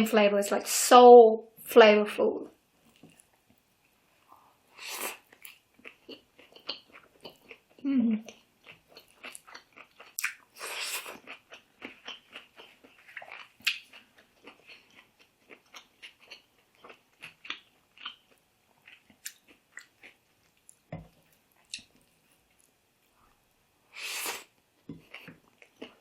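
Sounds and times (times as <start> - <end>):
crunchy chewing: 4.9 - 22.8.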